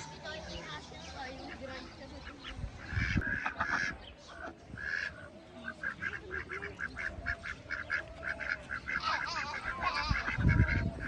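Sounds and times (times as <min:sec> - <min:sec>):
waterfowl honking calls: 0:01.4 - 0:11.0.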